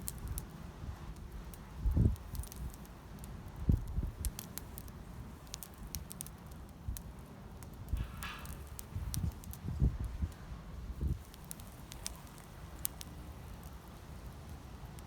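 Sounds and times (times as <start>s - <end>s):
campfire crackling: 0.0s - 15.0s
sharp pops: 7.9s - 9.7s, 11.2s - 13.8s.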